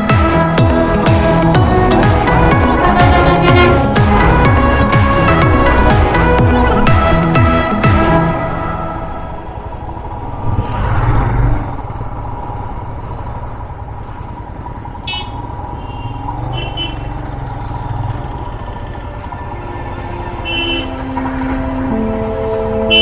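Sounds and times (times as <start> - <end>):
motorcycle engine rumble: 0.0 - 23.0
wind and road noise: 0.0 - 23.0
vehicle horn toots: 2.5 - 5.0, 15.0 - 17.2, 18.1 - 23.0.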